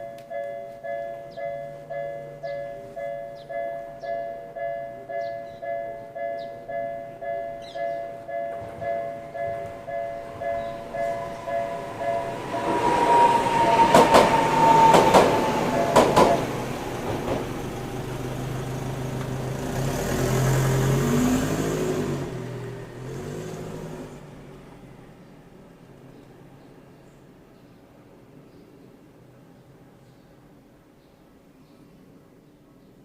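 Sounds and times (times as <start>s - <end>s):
tram wheels clacking on rail joints: 0.0s - 24.7s
high steady squeal: 9.5s - 16.2s
rising motor hum: 17.7s - 25.2s.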